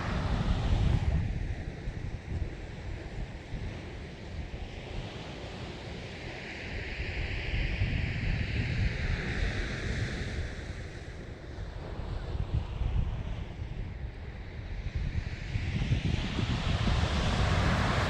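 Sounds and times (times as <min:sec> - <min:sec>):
wind buffeting microphone: 0:00.0 - 0:18.0
sea waves washing: 0:16.3 - 0:18.0.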